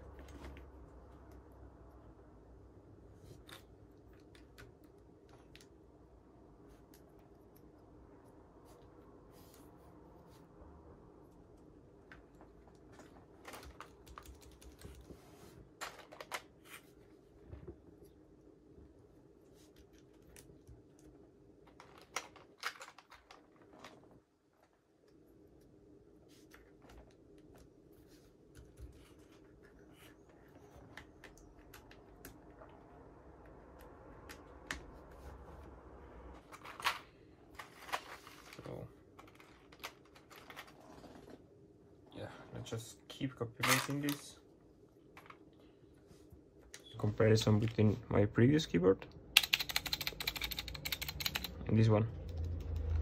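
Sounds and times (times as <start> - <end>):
plastic keycaps clicking: 49.4 - 51.6.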